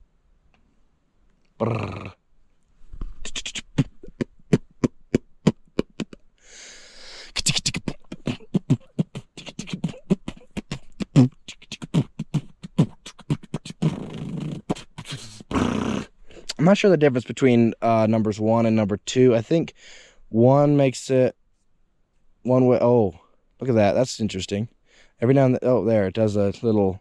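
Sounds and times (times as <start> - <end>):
man beatboxing: 3.1 - 6.2, 7.2 - 16.6.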